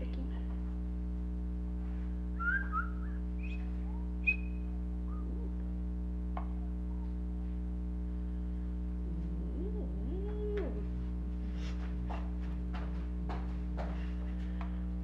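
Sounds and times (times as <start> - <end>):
low electrical hum: 0.0 - 15.0
high chirps and whistles: 2.4 - 5.3.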